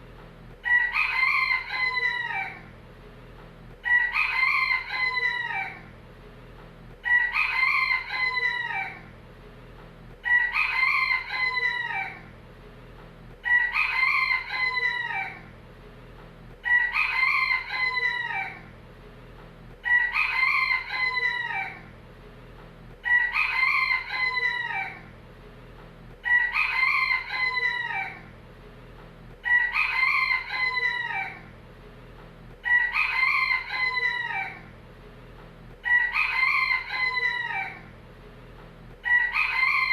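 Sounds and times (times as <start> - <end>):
rooster crowing: 0.6 - 2.7, 3.8 - 5.9, 7.0 - 9.1, 10.2 - 12.3, 13.4 - 15.5, 16.6 - 18.7, 19.8 - 21.9, 23.0 - 25.1, 26.2 - 28.3, 29.4 - 31.5, 32.6 - 34.7, 35.8 - 37.9, 39.0 - 39.9.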